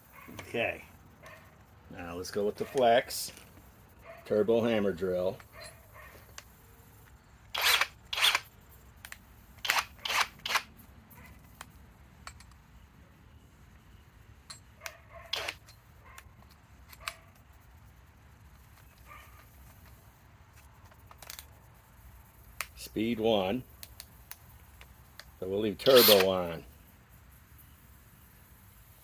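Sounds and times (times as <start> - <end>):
plastic clicks from drill handling: 23.8 - 26.4.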